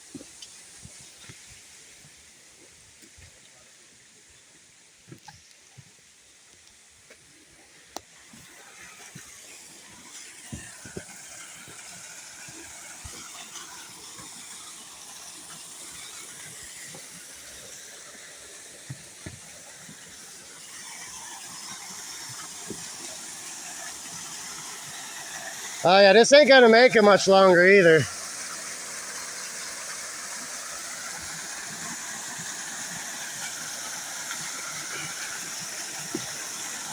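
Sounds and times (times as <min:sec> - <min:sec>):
waterfall rushing: 0:08.3 - 0:36.9.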